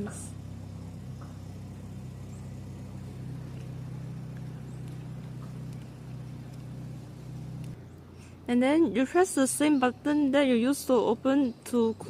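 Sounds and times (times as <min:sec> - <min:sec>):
gate motor humming: 0:00.0 - 0:07.8.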